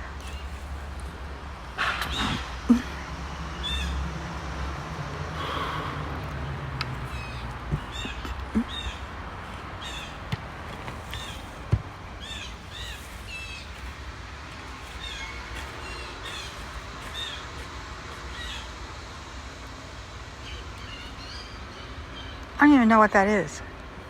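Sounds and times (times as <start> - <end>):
bird calling: 0.0 - 1.1, 1.8 - 4.1, 5.4 - 19.0.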